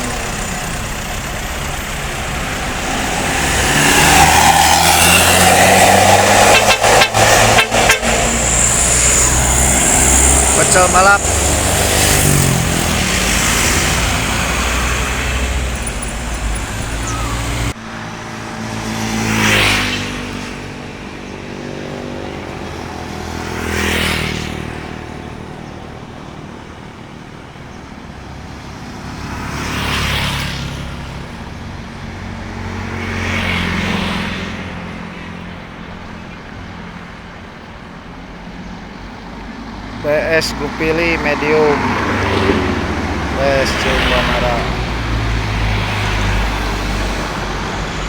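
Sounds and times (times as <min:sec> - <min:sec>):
loud steady road roar: 0:00.0 - 0:48.0
tour coaches passing by: 0:00.0 - 0:48.0.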